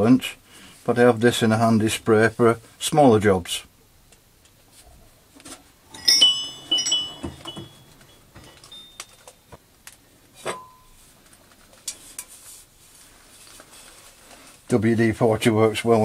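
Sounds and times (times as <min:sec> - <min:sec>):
ringing knock: 0:05.9 - 0:09.1
cans and bottles clinking: 0:05.9 - 0:09.4.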